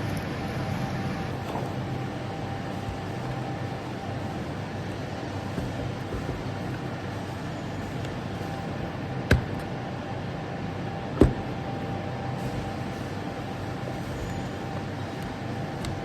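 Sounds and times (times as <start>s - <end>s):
mechanical hum: 0.0s - 16.0s.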